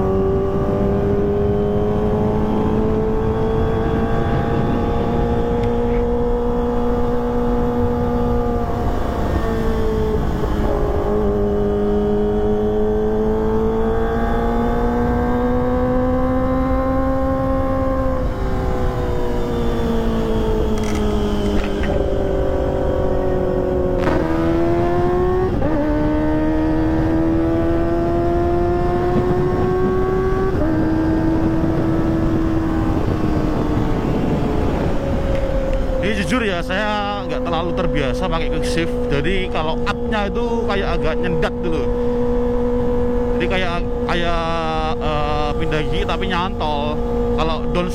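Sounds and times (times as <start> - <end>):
motorcycle engine revving: 0.0 - 47.9.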